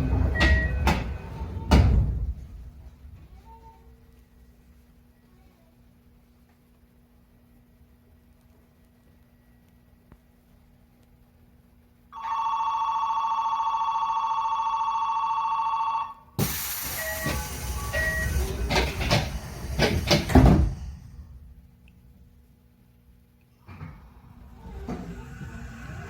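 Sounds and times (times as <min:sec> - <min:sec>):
train door warning tone: 0:00.0 - 0:02.3, 0:16.4 - 0:20.3
doors knocking and banging: 0:00.0 - 0:02.8, 0:18.1 - 0:21.0
air rushing from train doors: 0:00.0 - 0:03.4, 0:16.4 - 0:21.7, 0:23.6 - 0:26.0.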